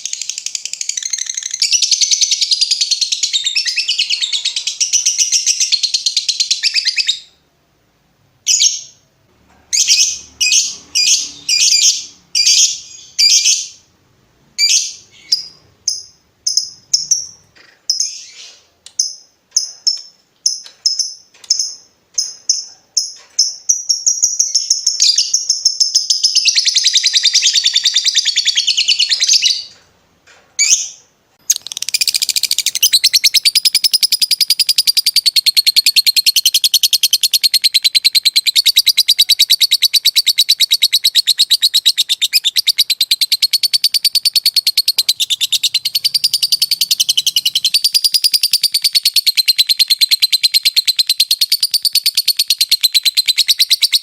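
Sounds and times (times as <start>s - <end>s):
bird chirps: 0.0s - 7.4s, 9.7s - 13.9s, 14.6s - 29.8s, 30.6s - 54.0s
bird chattering trill: 31.5s - 54.0s.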